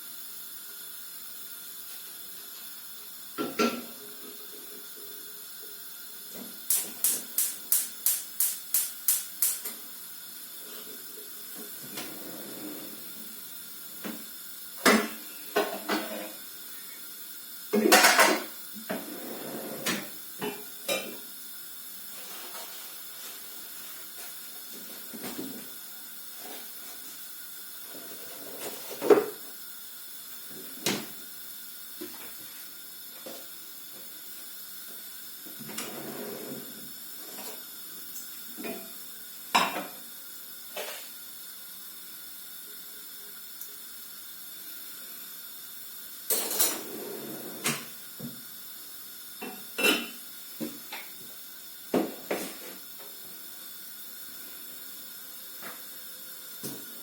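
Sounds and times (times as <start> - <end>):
faint steady hiss: 0.0 - 57.0
pots dishes and cutlery clattering: 14.8 - 16.2, 17.8 - 19.1, 49.4 - 50.2.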